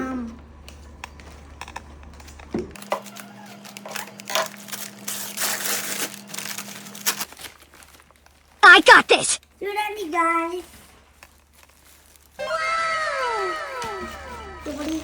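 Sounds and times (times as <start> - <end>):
packaging crinkling and rustling: 0.7 - 8.6, 9.4 - 12.4.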